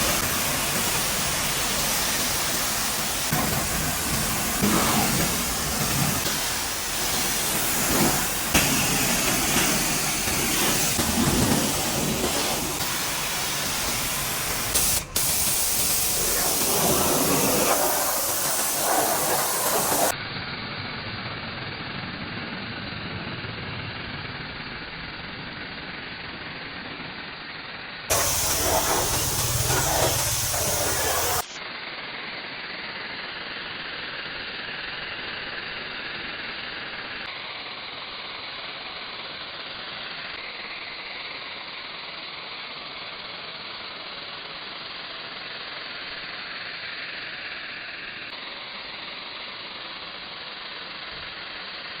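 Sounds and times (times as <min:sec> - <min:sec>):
pressure washer spraying water: 0:00.0 - 0:20.2, 0:28.1 - 0:31.6.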